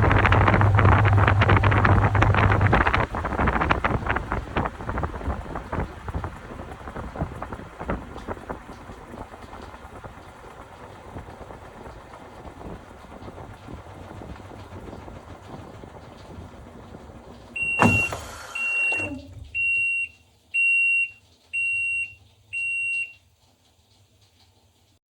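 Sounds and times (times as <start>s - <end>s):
washing machine clunk: 0.0s - 20.1s
washing machine running: 0.0s - 25.0s
short beeps: 17.6s - 22.1s.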